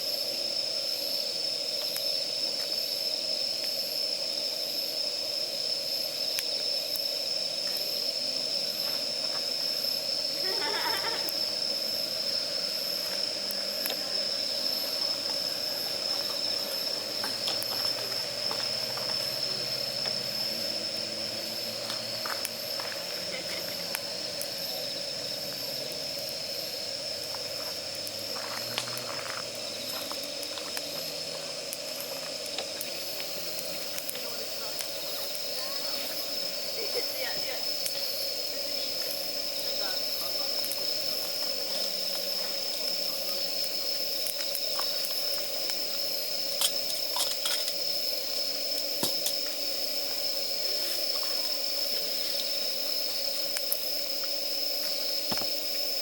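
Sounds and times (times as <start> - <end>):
campfire hissing: 0.0 - 56.0
crackles and pops of burning wood: 1.6 - 2.8, 6.2 - 8.0, 8.8 - 56.0.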